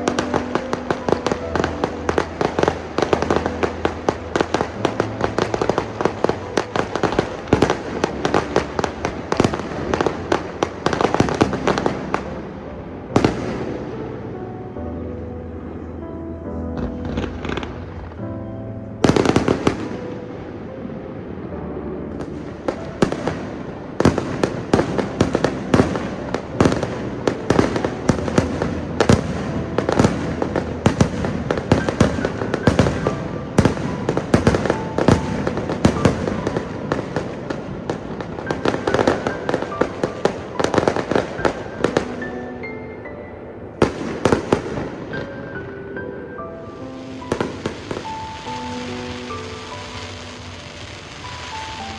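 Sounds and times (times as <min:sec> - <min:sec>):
fireworks bangs and crackles: 0:00.0 - 0:14.5, 0:16.8 - 0:18.4, 0:19.0 - 0:42.8, 0:43.7 - 0:51.9
music playing: 0:00.0 - 0:51.9.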